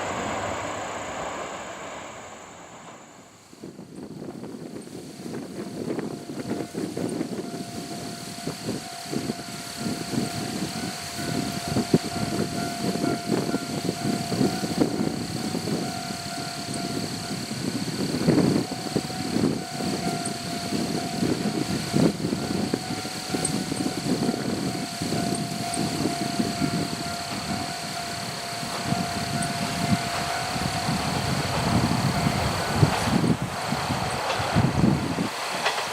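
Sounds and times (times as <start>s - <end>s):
level crossing warning alarm: 6.0s - 32.9s
train wheels knocking over rail joints: 8.8s - 35.9s.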